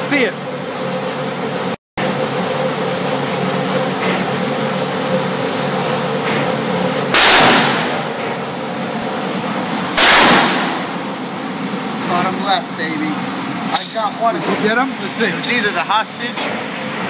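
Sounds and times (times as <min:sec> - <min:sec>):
steady mechanical hum: 0:00.0 - 0:17.0
rifle shot: 0:07.1 - 0:08.0, 0:10.0 - 0:10.9.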